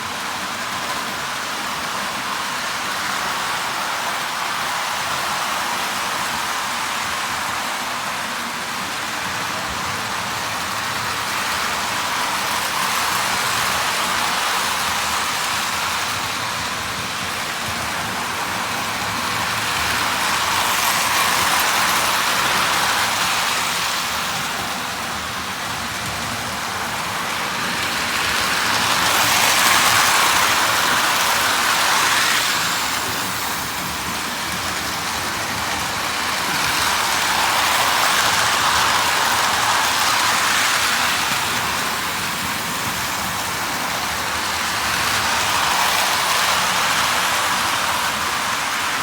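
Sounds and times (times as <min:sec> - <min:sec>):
toy trains rolling on track: 0:00.0 - 0:49.0.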